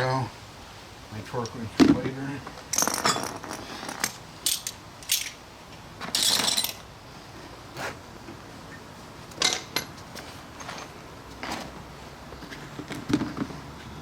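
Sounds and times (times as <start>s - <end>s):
metal hand tools clinking: 2.7s - 5.4s, 6.2s - 6.8s.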